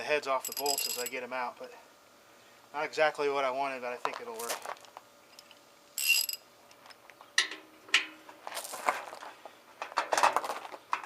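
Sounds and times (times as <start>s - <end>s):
metal tools clinking: 0.4s - 1.2s, 5.3s - 6.4s.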